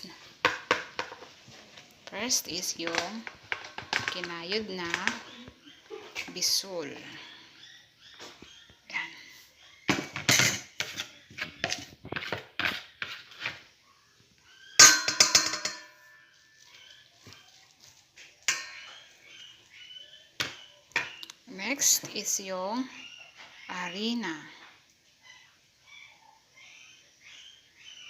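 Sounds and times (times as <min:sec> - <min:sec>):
spoon scraping a bowl: 0:10.2 - 0:13.8, 0:14.5 - 0:19.7.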